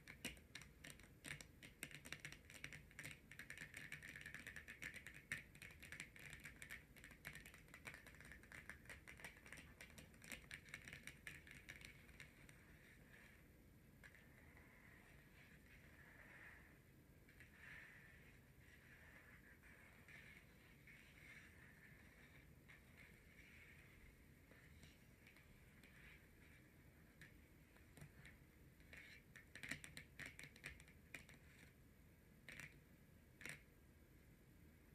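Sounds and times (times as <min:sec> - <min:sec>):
fingernails tapping on cards: 0:00.0 - 0:12.7, 0:28.9 - 0:31.7.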